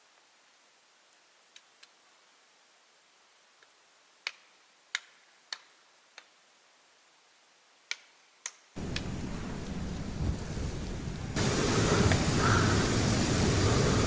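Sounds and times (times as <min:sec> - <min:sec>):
sharp isolated clicks: 0:07.9 - 0:09.1
loud steady rushing noise: 0:08.8 - 0:14.0.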